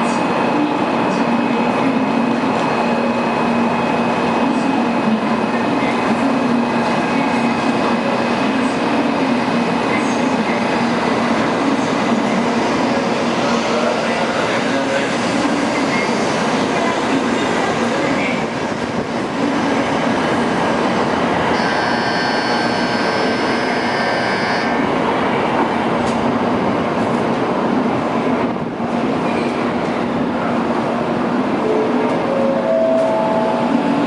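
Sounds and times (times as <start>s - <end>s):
high-pitched train whine: 21.5s - 25.0s, 31.6s - 34.0s.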